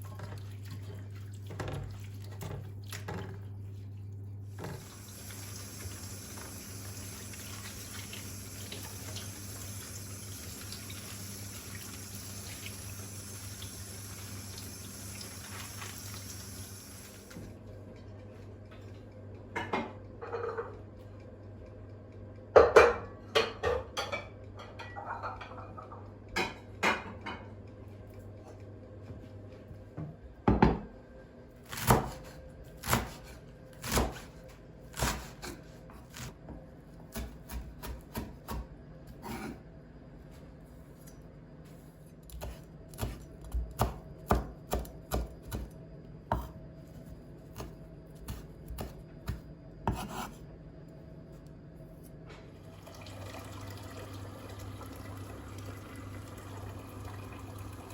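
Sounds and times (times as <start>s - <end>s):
knife chopping on cutting board: 31.7s - 34.3s, 34.9s - 36.3s, 37.1s - 39.5s, 42.3s - 45.7s, 46.3s - 46.6s, 47.5s - 50.4s.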